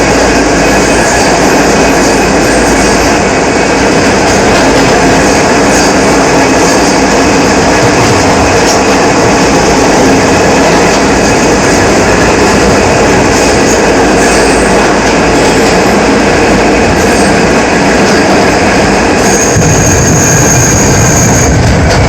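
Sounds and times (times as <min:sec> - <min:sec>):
subway wheels rushing on rail: 0:00.0 - 0:22.0.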